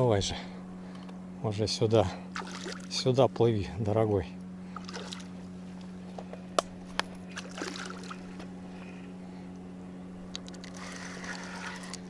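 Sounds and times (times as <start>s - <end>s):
steady low hum: 0.0s - 12.0s
light water splashing: 2.3s - 3.0s, 4.7s - 5.9s, 7.3s - 8.4s.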